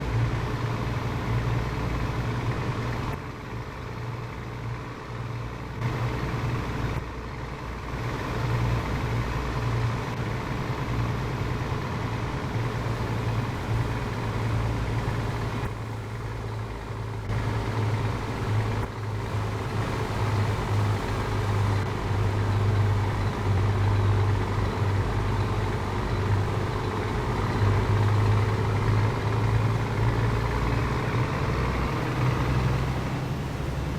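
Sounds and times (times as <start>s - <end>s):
diesel truck engine idling: 0.0s - 33.9s.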